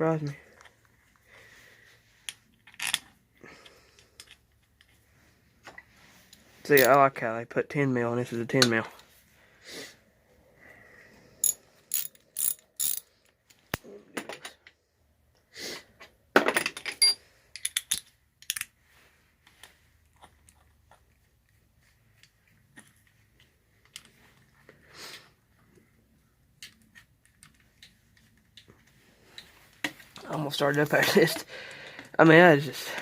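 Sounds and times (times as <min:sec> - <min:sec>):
ratchet wrench clicking: 0:11.4 - 0:13.0
metal hand tools clinking: 0:11.4 - 0:13.1.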